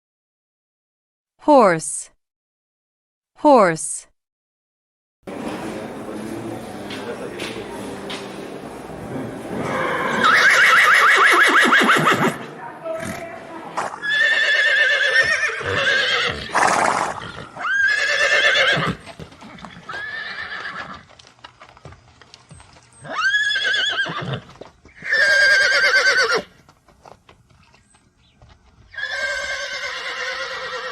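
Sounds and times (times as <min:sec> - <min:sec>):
horse whinnying: 0:09.6 - 0:12.4, 0:13.8 - 0:21.0, 0:23.0 - 0:26.5, 0:28.9 - 0:30.9.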